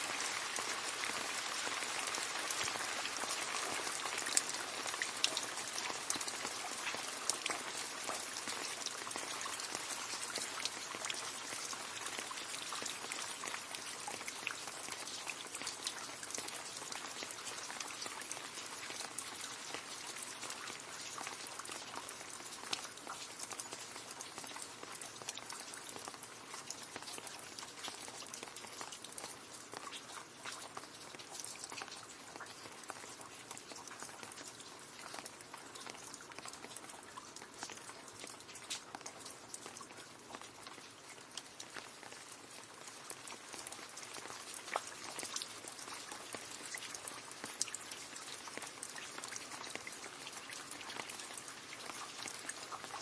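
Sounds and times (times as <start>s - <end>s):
rain falling into a puddle: 0.0s - 53.0s.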